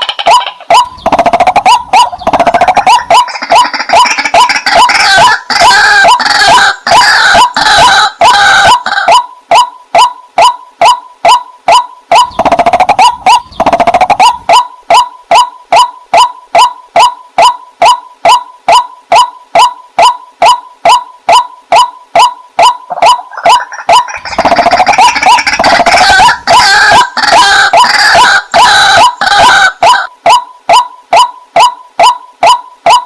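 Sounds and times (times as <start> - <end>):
waterhen calling: 0.0 - 33.0.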